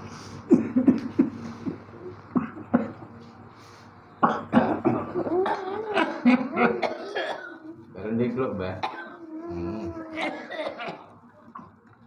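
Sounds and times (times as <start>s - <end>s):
man coughing: 0.5s - 3.1s, 4.2s - 7.7s, 8.8s - 9.2s, 10.2s - 11.1s.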